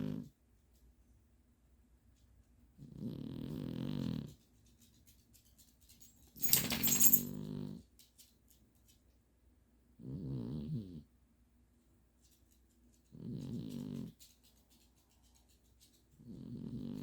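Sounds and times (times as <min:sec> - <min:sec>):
pet snoring: 0:00.0 - 0:00.3, 0:02.8 - 0:04.4, 0:10.0 - 0:11.1, 0:13.1 - 0:14.2, 0:16.2 - 0:17.0.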